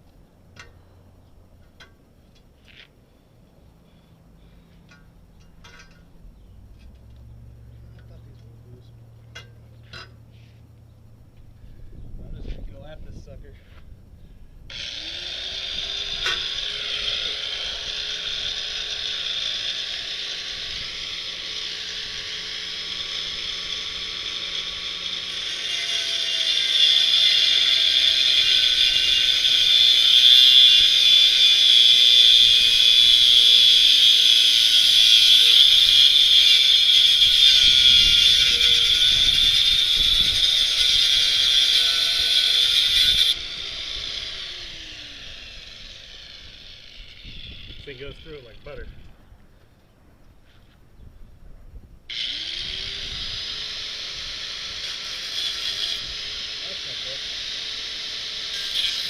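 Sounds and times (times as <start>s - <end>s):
harsh grinding through steel: 14.7s - 49.1s, 52.1s - 59.0s
cutting tool motor whining: 14.7s - 49.2s, 52.1s - 59.0s.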